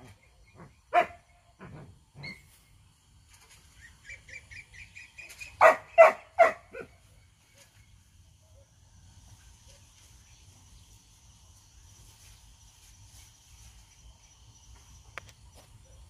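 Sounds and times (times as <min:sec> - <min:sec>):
dog barking: 0:00.9 - 0:01.2, 0:05.6 - 0:07.0.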